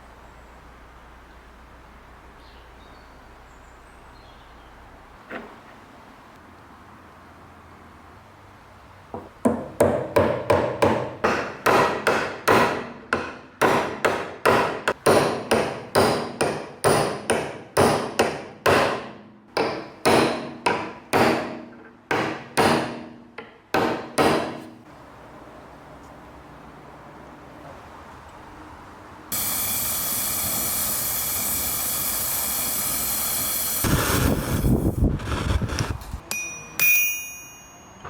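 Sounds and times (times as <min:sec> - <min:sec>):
hammer blows ringing: 0:09.5 - 0:23.2, 0:23.8 - 0:24.7, 0:36.2 - 0:38.0.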